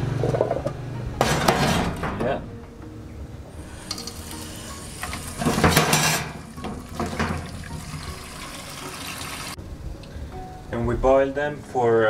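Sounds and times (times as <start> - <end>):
tap water running into pot: 3.8 - 9.6.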